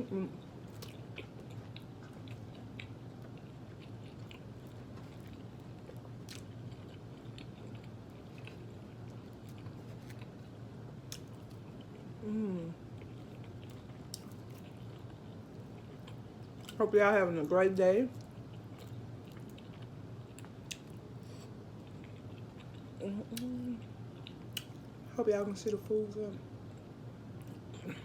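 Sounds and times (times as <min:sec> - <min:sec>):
chewing fried chicken: 0:00.5 - 0:25.9
person humming: 0:12.2 - 0:12.8.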